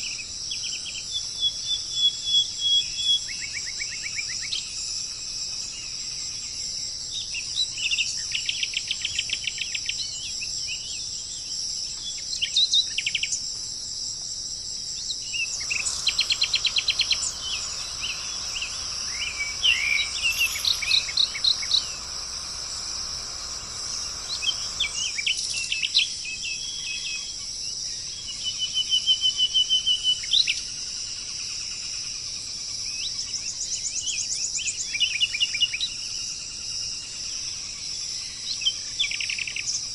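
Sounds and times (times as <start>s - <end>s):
songbirds trilling and chirping: 0.0s - 36.1s
insect chorus: 0.0s - 39.9s
soft hiss: 13.0s - 32.8s.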